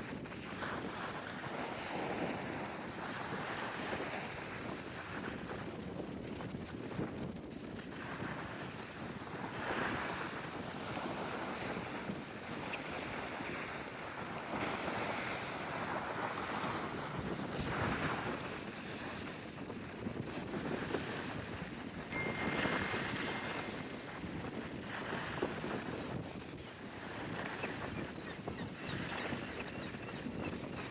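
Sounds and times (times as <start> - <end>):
wind rumbling on microphone: 0.0 - 30.9
sea waves washing: 22.1 - 24.3.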